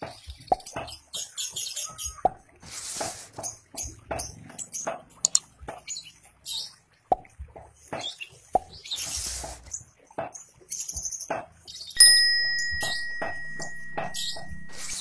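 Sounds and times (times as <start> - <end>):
bird calling in sharp notes: 11.0 - 15.0
metallic ding: 12.0 - 15.0.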